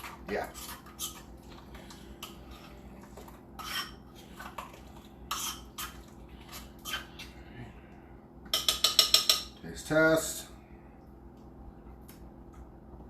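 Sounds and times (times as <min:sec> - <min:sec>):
spoon scraping a bowl: 0:00.0 - 0:07.3.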